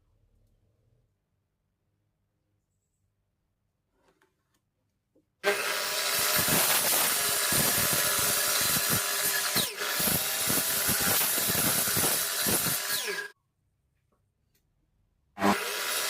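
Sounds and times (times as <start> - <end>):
power tool cutting wood: 5.4 - 13.4, 15.4 - 16.0.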